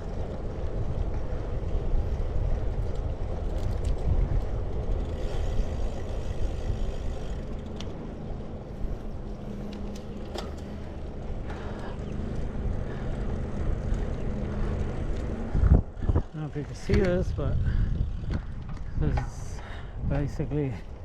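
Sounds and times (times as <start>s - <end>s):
wind and road rumble: 0.0s - 21.0s.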